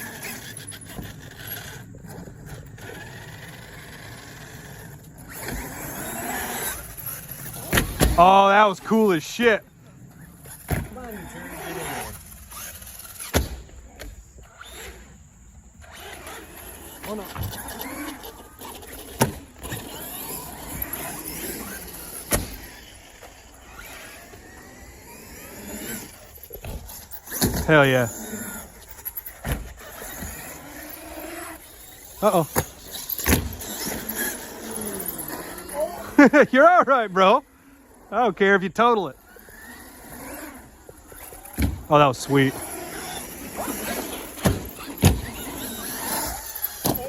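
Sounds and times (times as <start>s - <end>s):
toy truck motor whining: 0.0s - 47.0s
tyres rumbling on concrete: 15.8s - 47.0s.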